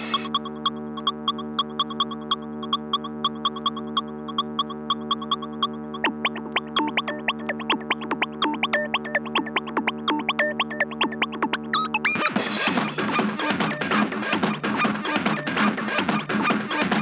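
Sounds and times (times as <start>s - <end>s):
electronic dance music: 0.0s - 0.3s, 6.0s - 17.0s.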